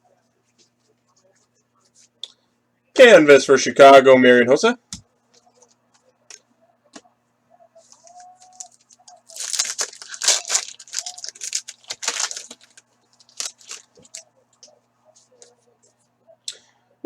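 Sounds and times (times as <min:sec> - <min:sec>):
foil wrapper tearing and crinkling: 0:08.4 - 0:14.2.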